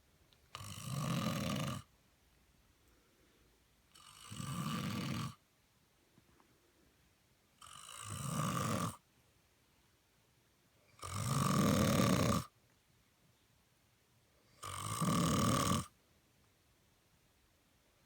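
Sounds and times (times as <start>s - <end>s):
man snoring: 0.6s - 1.9s, 4.0s - 5.4s, 7.6s - 9.0s, 11.0s - 12.5s, 14.6s - 15.9s.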